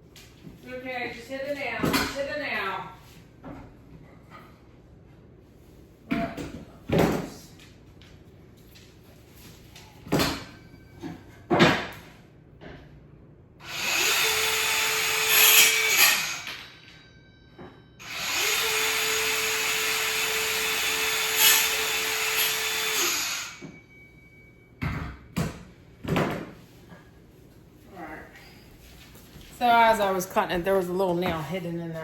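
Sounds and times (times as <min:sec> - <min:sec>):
mini chainsaw cutting wood: 0:13.6 - 0:16.5, 0:18.0 - 0:23.6.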